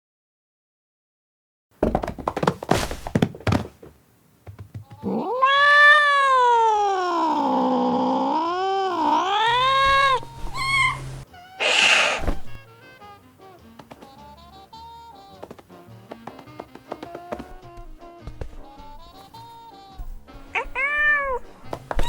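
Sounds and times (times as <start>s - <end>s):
cat meowing: 5.0s - 12.6s, 20.6s - 22.0s
burst of noise: 11.6s - 12.6s.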